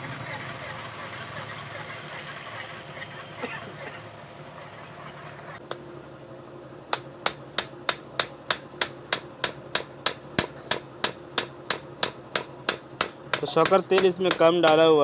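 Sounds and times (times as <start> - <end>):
sharp ringing metal taps: 7.0 - 14.9.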